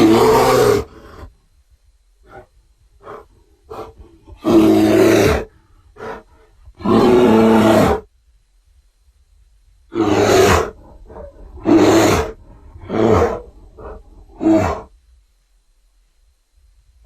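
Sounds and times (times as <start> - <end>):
dinosaur roars: 0.0 - 1.0, 3.0 - 8.1, 9.9 - 14.9.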